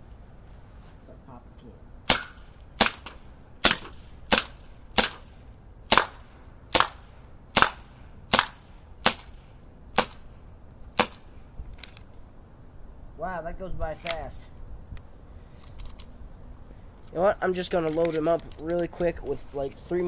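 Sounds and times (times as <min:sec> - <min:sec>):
bb pistol firing: 0:02.0 - 0:10.2, 0:11.0 - 0:11.3.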